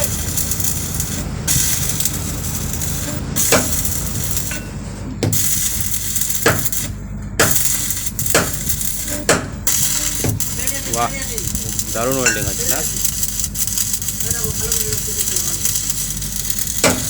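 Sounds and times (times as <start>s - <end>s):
arc welding crackling hiss: 0.0s - 17.0s
sharp knocks: 4.6s - 5.4s, 9.2s - 10.5s.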